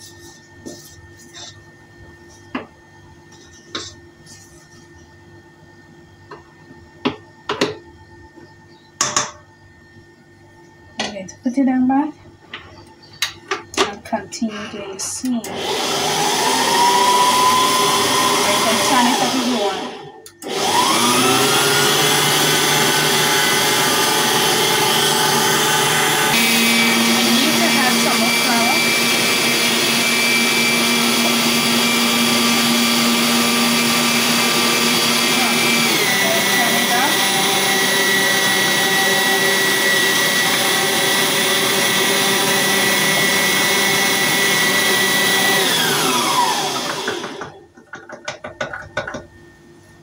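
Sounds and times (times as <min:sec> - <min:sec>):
stand mixer whirring: 0:15.4 - 0:49.2.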